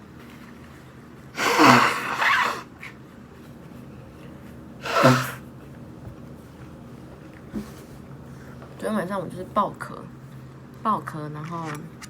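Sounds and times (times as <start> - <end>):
woman coughing: 1.4 - 2.6, 4.8 - 5.4.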